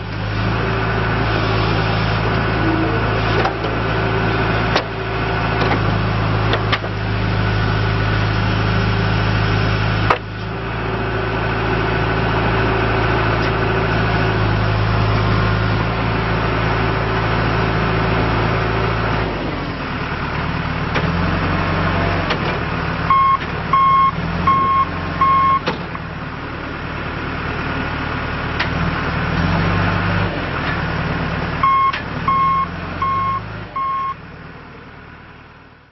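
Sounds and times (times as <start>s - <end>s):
diesel engine running: 0.0s - 35.9s
reverse alarm beeps: 23.1s - 25.6s, 31.6s - 34.2s.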